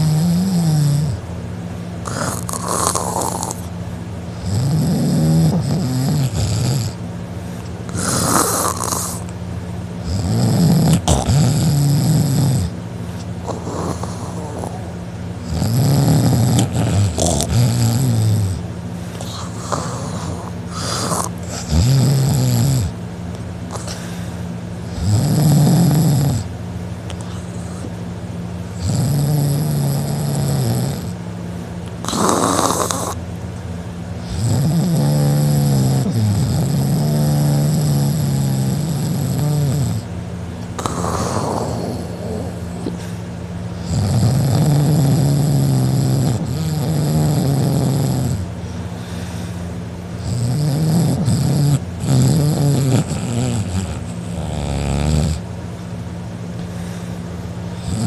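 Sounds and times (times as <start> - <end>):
man snoring loudly: 0.0 - 1.2, 2.0 - 3.7, 4.3 - 7.0, 7.9 - 9.3, 10.0 - 12.8, 13.4 - 18.6, 19.2 - 23.0, 23.7 - 24.2, 24.9 - 26.5, 28.8 - 31.2, 32.0 - 33.2, 34.2 - 40.1, 40.8 - 43.2, 43.8 - 49.3, 50.2 - 55.4, 57.8 - 58.0
hissing breath out: 48.6 - 49.7.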